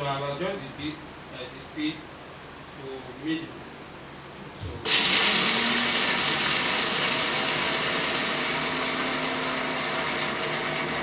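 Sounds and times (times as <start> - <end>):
blender grinding beans: 4.9 - 11.0.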